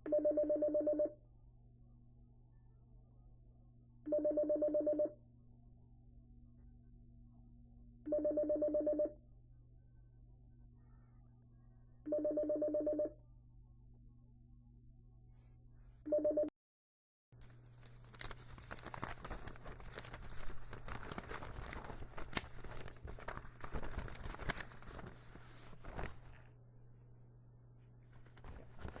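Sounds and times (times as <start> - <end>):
crinkling and crunching: 17.4 - 26.4.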